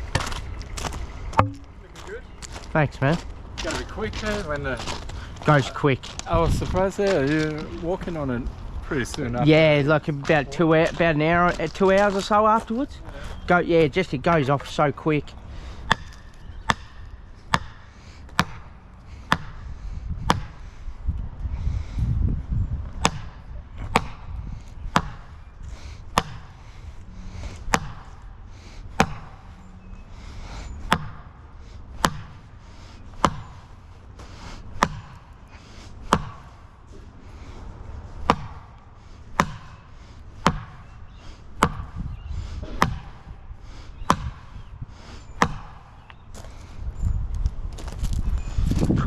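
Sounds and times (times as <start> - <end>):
hammer blows: 1.4 - 1.8, 41.6 - 43.4.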